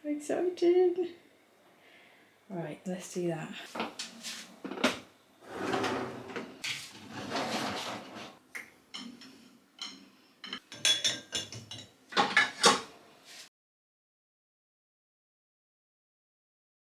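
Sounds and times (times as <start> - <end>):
dishes scraping: 3.8 - 12.9
crockery and cutlery clattering: 4.7 - 12.9.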